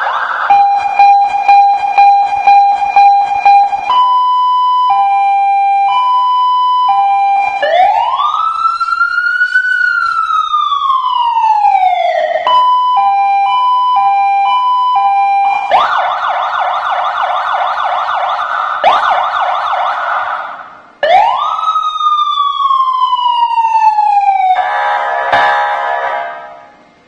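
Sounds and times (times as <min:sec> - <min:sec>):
electronic police siren: 0:00.0 - 0:26.5.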